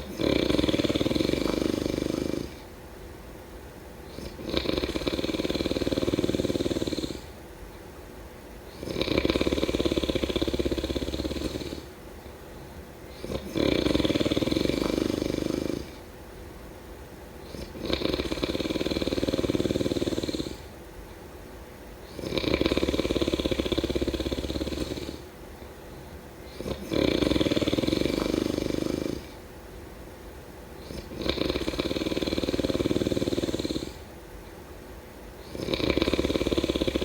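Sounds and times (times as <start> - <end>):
person snoring: 0.0 - 2.6, 4.1 - 7.3, 8.7 - 11.9, 13.1 - 16.0, 17.4 - 20.7, 22.1 - 25.3, 26.5 - 29.4, 30.8 - 34.1, 35.4 - 37.0
quiet breathing: 0.0 - 2.8, 4.0 - 7.8, 8.6 - 16.4, 17.3 - 21.3, 21.9 - 29.5, 30.7 - 34.6, 35.3 - 37.0.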